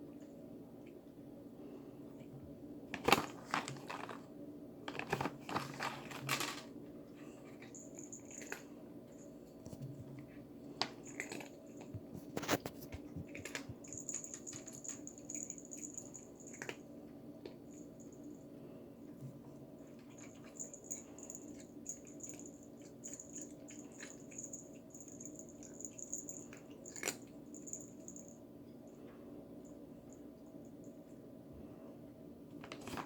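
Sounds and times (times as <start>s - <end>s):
steady low hum: 0.0s - 32.8s
treat bag crinkling: 2.9s - 6.7s, 32.6s - 33.0s.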